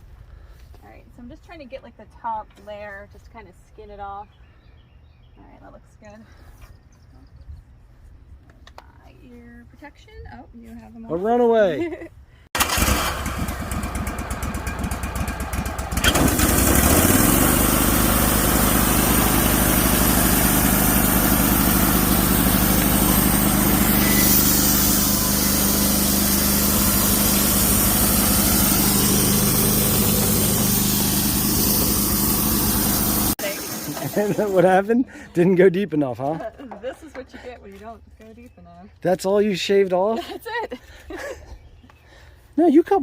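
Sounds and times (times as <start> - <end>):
sawmill engine idling and revving: 12.6 - 35.5
band saw cutting log: 16.0 - 34.9.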